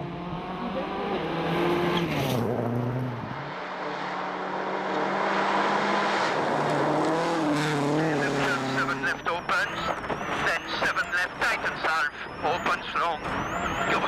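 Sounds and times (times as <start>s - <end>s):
rally car engine revving hard: 0.0s - 11.6s.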